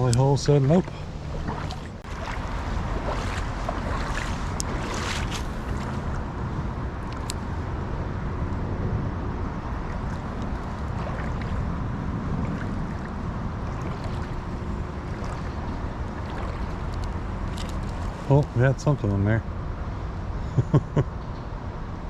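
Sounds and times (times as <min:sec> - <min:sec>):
flowing creek water: 0:00.0 - 0:07.4, 0:09.6 - 0:19.2
wind rumble on microphone: 0:00.0 - 0:22.0.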